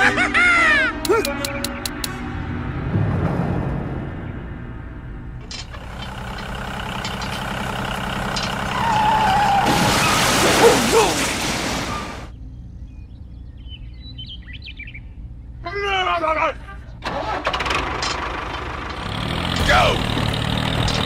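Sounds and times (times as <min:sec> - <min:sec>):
heavy vehicle engine running: 0:01.9 - 0:10.7, 0:17.0 - 0:21.0.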